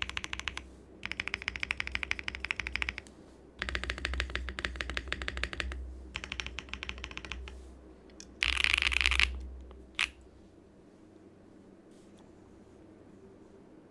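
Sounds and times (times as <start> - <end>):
mechanical keyboard typing: 0.0 - 10.2.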